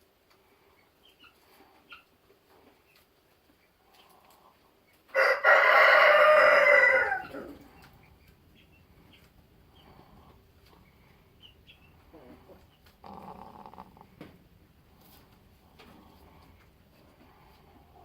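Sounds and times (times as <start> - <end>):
rooster crowing: 5.1 - 7.7.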